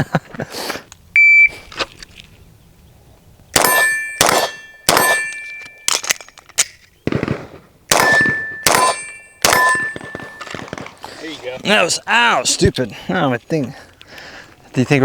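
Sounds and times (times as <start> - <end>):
steel plate ringing: 3.6 - 5.9, 7.9 - 10.5
gunshots: 3.6 - 6.1, 7.0 - 11.2.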